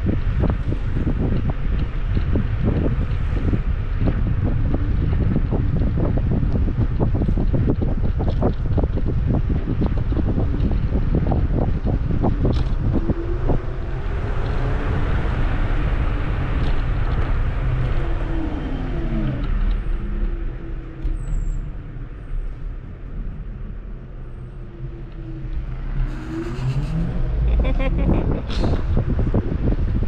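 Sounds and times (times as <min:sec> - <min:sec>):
scooter wheel rumble: 0:00.0 - 0:30.0
wind noise on microphone: 0:00.0 - 0:30.0
electric motor whine: 0:24.4 - 0:28.1.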